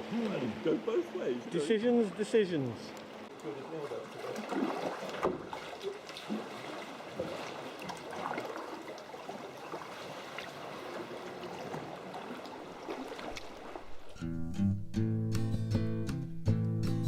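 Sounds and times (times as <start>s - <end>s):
paddle splashes: 0.0s - 14.2s
water sloshing and trickling: 0.0s - 14.2s
acoustic guitar music: 14.1s - 17.0s.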